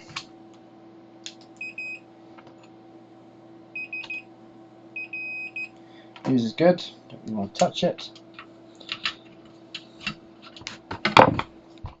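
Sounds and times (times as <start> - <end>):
multimeter continuity beeps: 1.6 - 2.0, 3.7 - 4.3, 5.0 - 5.8.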